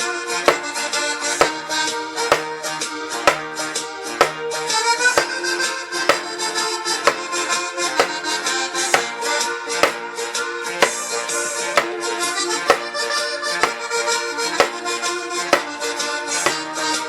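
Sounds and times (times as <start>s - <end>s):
sharp percussive hit: 2.3s - 2.5s.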